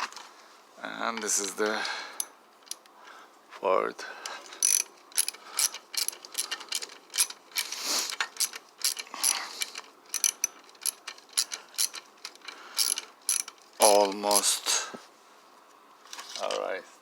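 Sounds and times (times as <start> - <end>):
hand tool clicking: 4.6 - 14.5.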